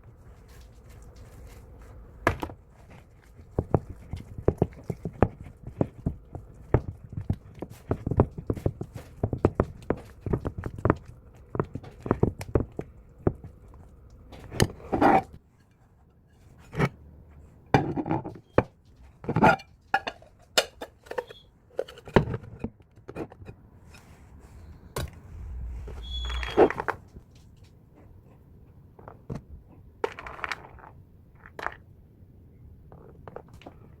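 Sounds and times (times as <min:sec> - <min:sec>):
kitchenware scraping: 0:25.2 - 0:27.0.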